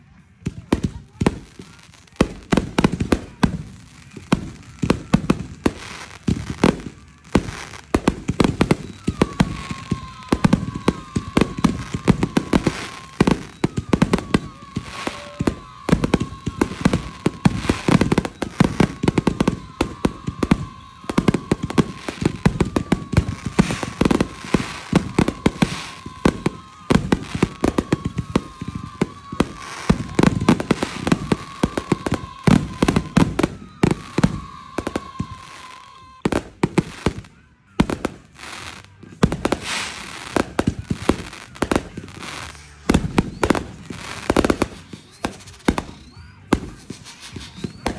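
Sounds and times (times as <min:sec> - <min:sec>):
fireworks bangs and crackles: 0:00.0 - 0:47.9
descending whistling tone: 0:43.1 - 0:47.9.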